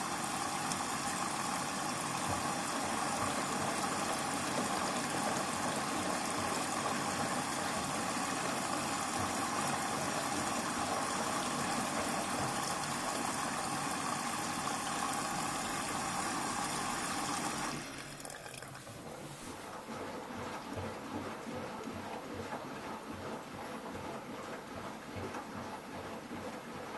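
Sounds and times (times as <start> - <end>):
washing machine drain pump running: 0.0 - 26.9.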